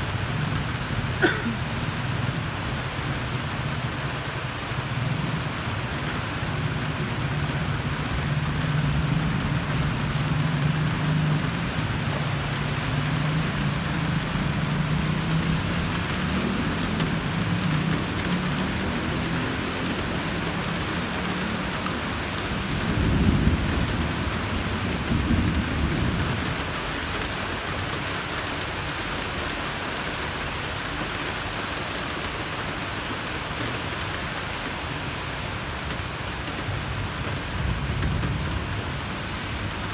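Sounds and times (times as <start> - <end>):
steady rain: 0.0 - 39.9
thunder rumbling: 22.7 - 26.7.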